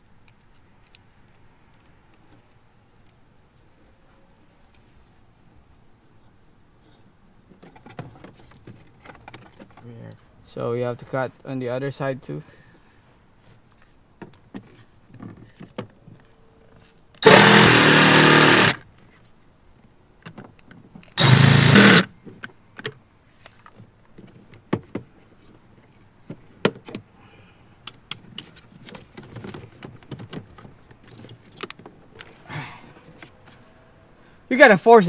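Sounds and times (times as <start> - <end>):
power tool cutting plastic: 17.2 - 18.8, 21.2 - 22.1.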